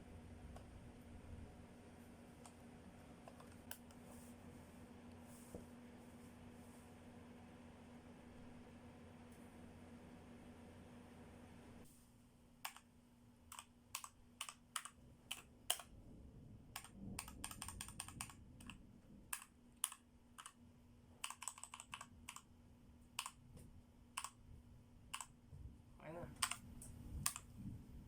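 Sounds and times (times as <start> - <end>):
mechanical keyboard keystrokes: 12.7 - 12.9, 13.5 - 15.9, 16.8 - 20.6, 21.2 - 22.5, 23.2 - 23.4, 24.2 - 24.4, 26.4 - 26.6, 27.2 - 27.4.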